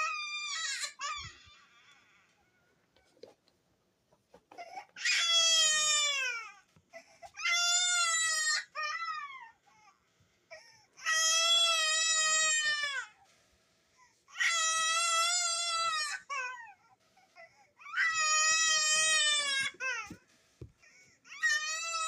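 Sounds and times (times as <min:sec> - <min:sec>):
baby crying: 0:00.0 - 0:02.6, 0:04.5 - 0:13.2, 0:14.3 - 0:20.2, 0:20.8 - 0:22.0.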